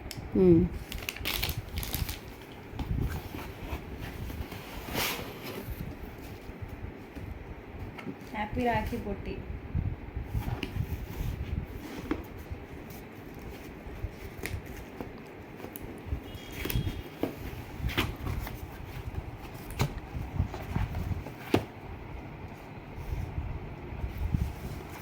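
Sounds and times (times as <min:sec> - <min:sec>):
paper and cardboard rustling: 0:00.8 - 0:07.2, 0:10.3 - 0:21.8.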